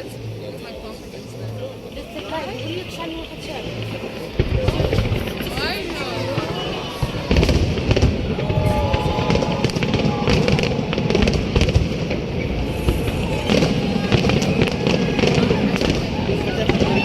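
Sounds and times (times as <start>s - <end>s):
fireworks bangs and crackles: 2.7s - 17.0s
low rumble: 7.3s - 16.8s.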